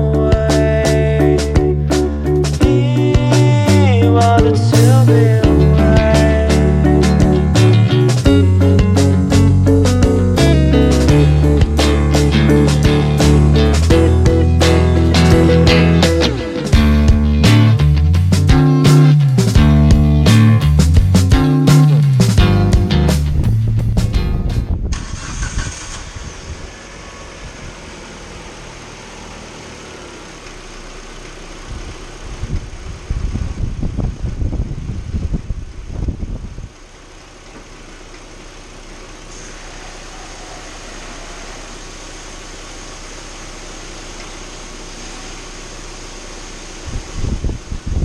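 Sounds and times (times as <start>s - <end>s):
car engine idling: 0.0s - 48.0s.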